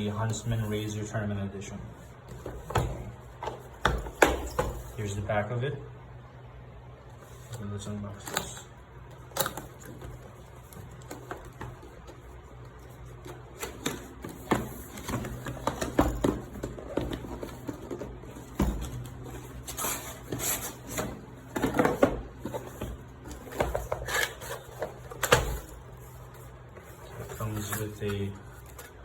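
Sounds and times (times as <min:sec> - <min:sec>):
cardboard box packaging rustling: 0:09.5 - 0:29.0.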